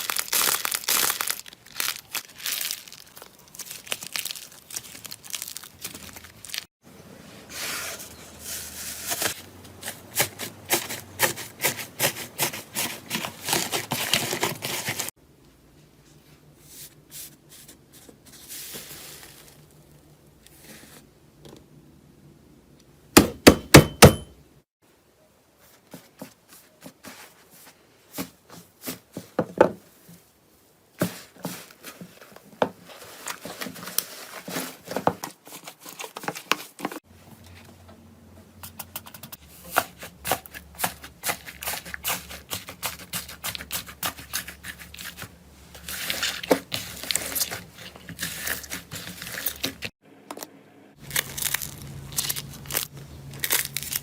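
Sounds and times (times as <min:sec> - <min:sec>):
slime crackling and crinkling: 0:00.0 - 0:06.7, 0:39.6 - 0:49.9, 0:51.0 - 0:54.0.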